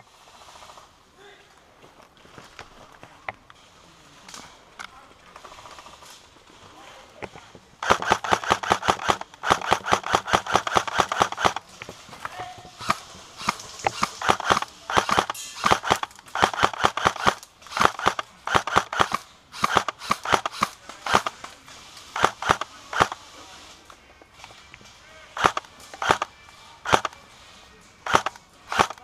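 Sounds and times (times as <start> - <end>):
airsoft gunshots: 7.8 - 11.6, 12.8 - 21.4, 22.2 - 23.2, 25.4 - 27.2, 28.1 - 29.0.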